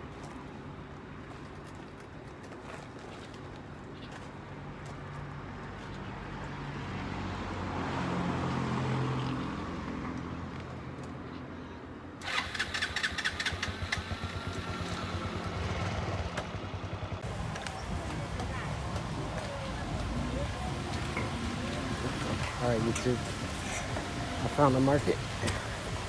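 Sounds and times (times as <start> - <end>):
rattling pulsing engine: 12.2 - 26.0
vehicle engine passing: 12.2 - 26.0.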